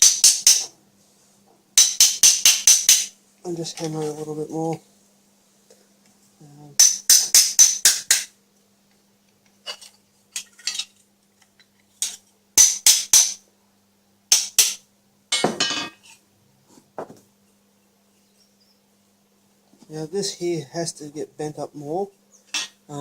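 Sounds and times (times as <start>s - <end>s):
hammer striking sheet metal: 0.0s - 0.7s, 1.8s - 3.2s, 6.8s - 8.3s, 12.6s - 13.4s, 14.3s - 15.9s.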